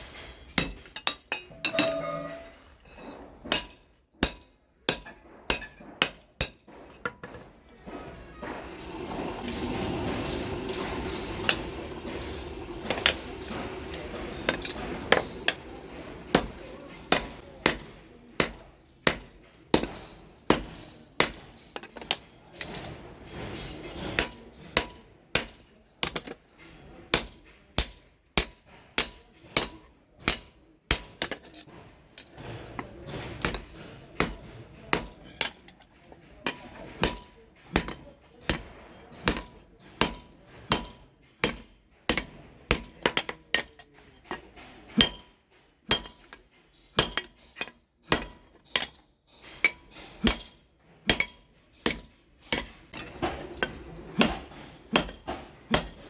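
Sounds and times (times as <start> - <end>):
hammer striking steel on anvil: 0.0 - 2.8, 3.5 - 26.4, 32.3 - 35.7, 36.4 - 56.0
steady background noise: 6.4 - 25.1.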